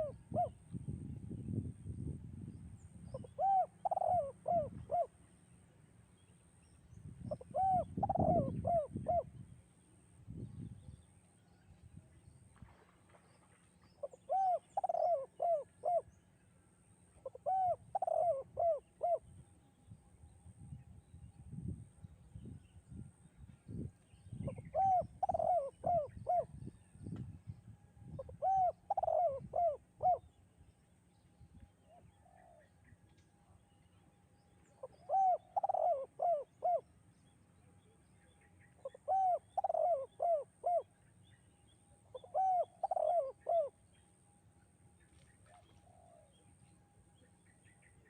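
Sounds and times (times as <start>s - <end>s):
dove cooing: 0.0s - 0.6s, 3.1s - 5.1s, 7.3s - 9.3s, 14.0s - 16.1s, 17.2s - 19.2s, 24.4s - 26.6s, 28.1s - 30.2s, 34.8s - 36.9s, 38.8s - 40.9s, 42.1s - 43.8s, 45.5s - 46.4s.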